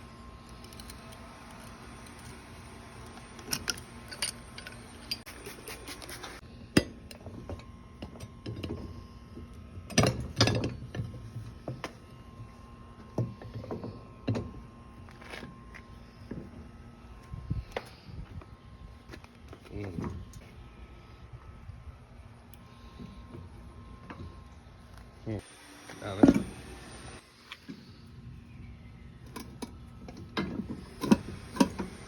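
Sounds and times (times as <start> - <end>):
metal clinks and knocks: 3.0 - 5.3.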